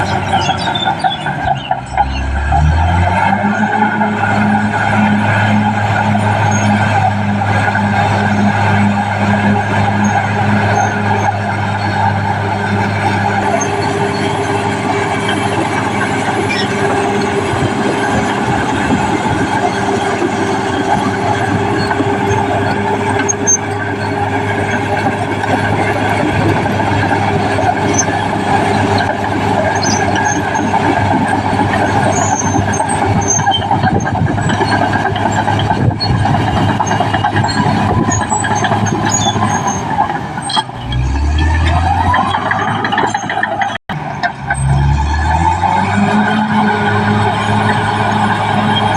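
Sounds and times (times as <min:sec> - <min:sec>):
bulldozer diesel engine: 0:00.0 - 0:48.9
high squeaks from running gear: 0:27.2 - 0:30.8, 0:31.8 - 0:43.8.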